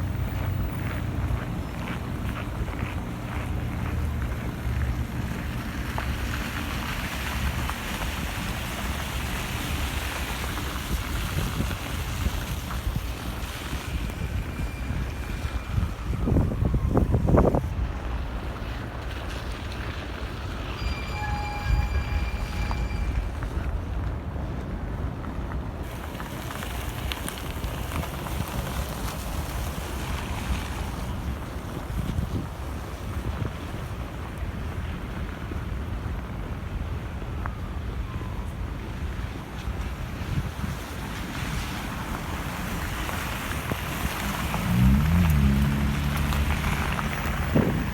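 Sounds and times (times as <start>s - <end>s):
wind buffeting microphone: 0.0s - 18.5s, 39.3s - 47.9s
city traffic rumble: 0.0s - 47.9s
steady tone: 20.8s - 23.7s.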